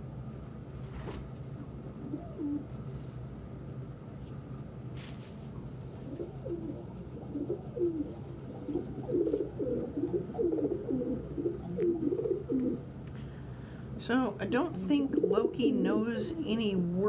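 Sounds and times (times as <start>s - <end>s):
faint steady hum: 0.0s - 17.0s
pigeons cooing: 1.9s - 2.7s, 5.9s - 13.0s, 14.9s - 16.8s.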